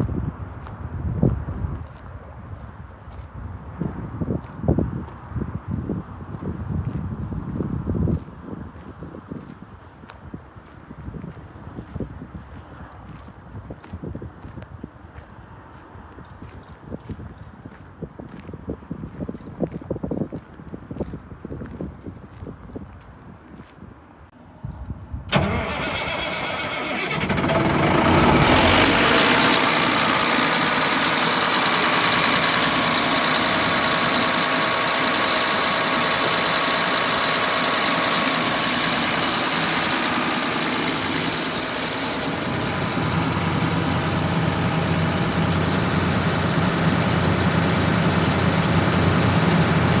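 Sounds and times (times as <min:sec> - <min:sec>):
diesel engine starting and running: 0:25.3 - 0:50.0.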